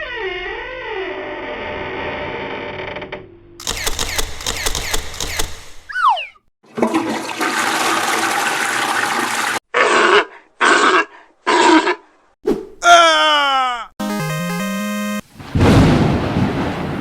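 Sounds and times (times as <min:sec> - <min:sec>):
rapid clicking: 0:03.6 - 0:05.9
short falling whistle: 0:05.9 - 0:06.4.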